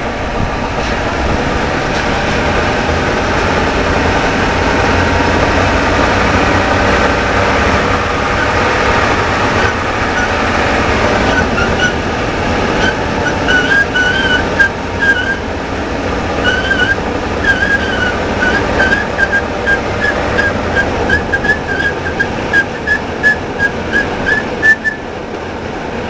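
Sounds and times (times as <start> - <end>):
vehicle axle grinding rumble: 0.0 - 26.0.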